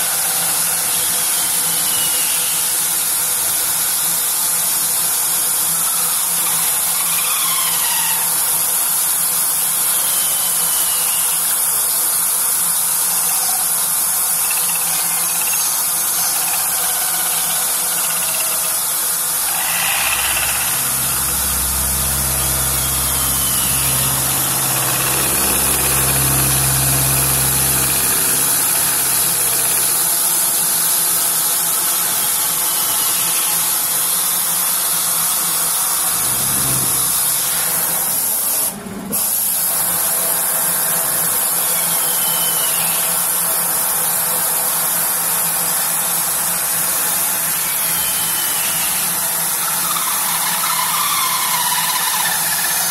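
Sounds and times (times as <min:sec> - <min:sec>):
router hiss and whine: 0:00.0 - 0:52.9
deep low hum: 0:19.4 - 0:30.6, 0:36.0 - 0:37.8.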